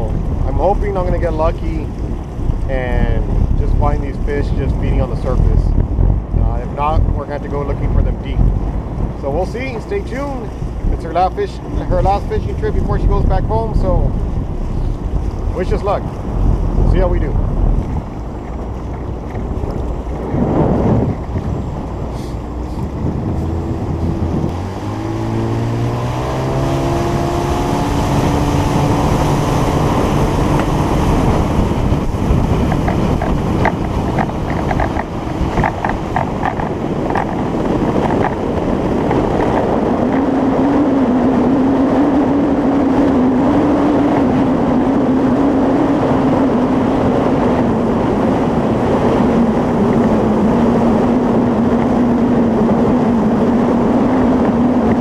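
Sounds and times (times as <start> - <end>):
boat motor throttling up: 0.0 - 55.0
wind and water rushing: 0.0 - 55.0.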